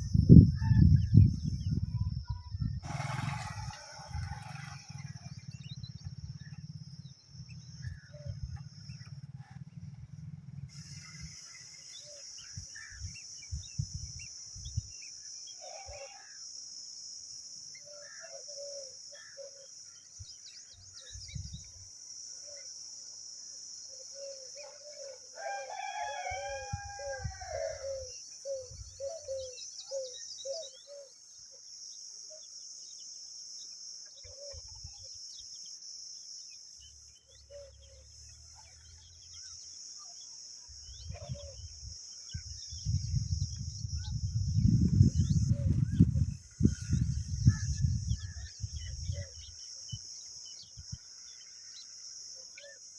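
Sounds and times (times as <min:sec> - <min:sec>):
birds calling: 0:02.8 - 0:16.4, 0:17.6 - 0:21.8, 0:23.9 - 0:31.6, 0:36.5 - 0:52.9
high-pitched hiss: 0:10.7 - 0:17.5.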